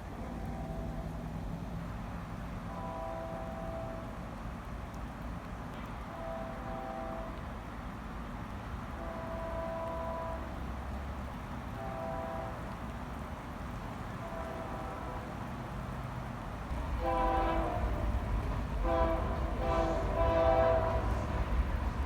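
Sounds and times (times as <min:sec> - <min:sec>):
passing train rumble: 0:00.0 - 0:22.0
train horn blasts: 0:02.7 - 0:04.3, 0:05.8 - 0:07.7, 0:08.8 - 0:10.8, 0:11.7 - 0:12.9, 0:14.0 - 0:15.8, 0:16.7 - 0:22.0.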